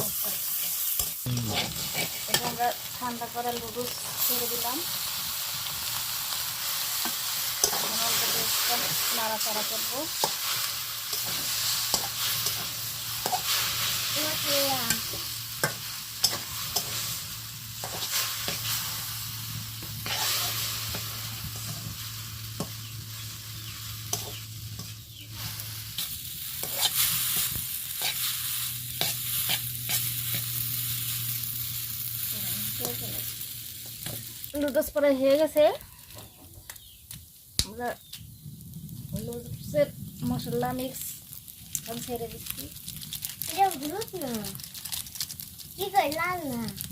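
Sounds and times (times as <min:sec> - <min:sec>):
noodles sizzling in oil: 0:00.0 - 0:46.9
spatula scraping metal pan: 0:00.4 - 0:02.6, 0:20.0 - 0:21.0, 0:24.1 - 0:30.6.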